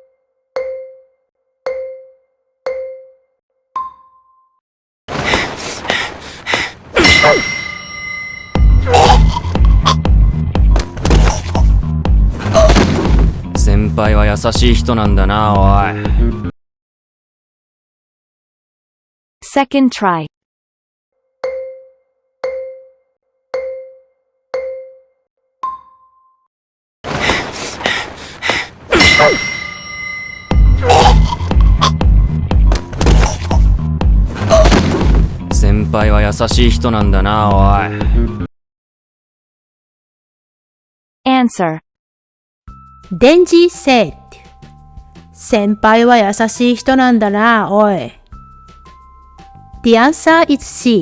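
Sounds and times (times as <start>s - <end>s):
anime soundtrack music: 6.9s - 16.5s, 28.9s - 38.5s, 42.7s - 51.0s
high ringing tone: 7.0s - 8.9s, 29.0s - 30.8s
mallet-like chimes: 7.0s - 9.1s, 29.0s - 31.6s
marimba-like countdown chime: 29.1s - 32.0s.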